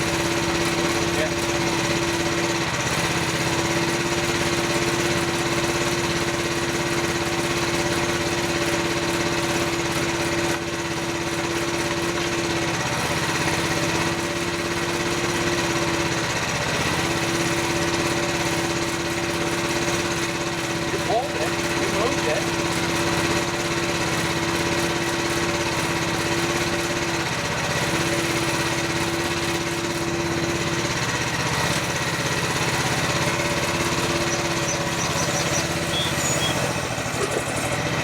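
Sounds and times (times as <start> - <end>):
small engine running: 0.0 - 38.0
constant whine: 30.4 - 38.0.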